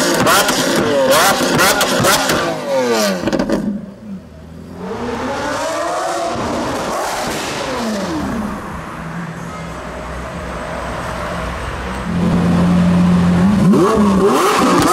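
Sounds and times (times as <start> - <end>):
sports car engine revving: 0.0 - 8.8, 12.0 - 14.9.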